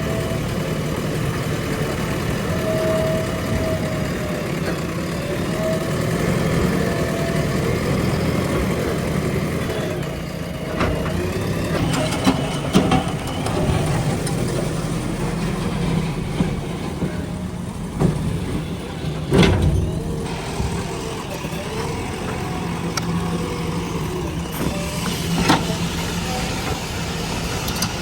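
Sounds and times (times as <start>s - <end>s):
diesel engine running: 0.0s - 28.0s
metal knocks and clanks: 10.7s - 21.0s.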